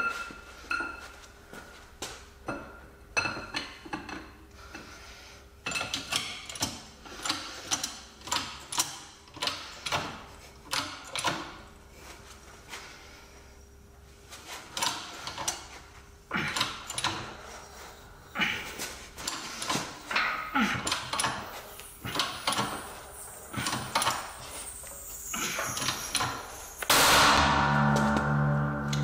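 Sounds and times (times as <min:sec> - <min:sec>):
hand tools clicking and clanking: 0:19.2 - 0:26.9.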